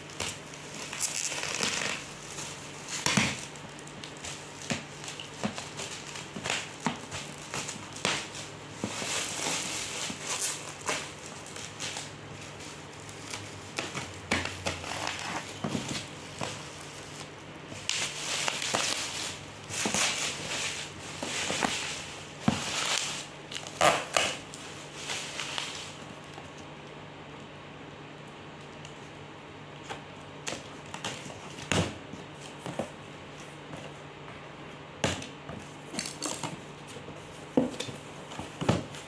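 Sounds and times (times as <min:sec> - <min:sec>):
plastic and cardboard crinkling: 0:00.0 - 0:26.7.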